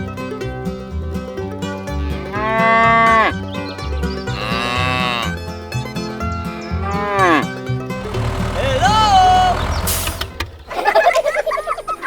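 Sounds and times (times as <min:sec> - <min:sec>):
background music: 0:00.0 - 0:10.7
cow mooing: 0:01.9 - 0:03.4, 0:04.2 - 0:05.4, 0:06.8 - 0:10.1.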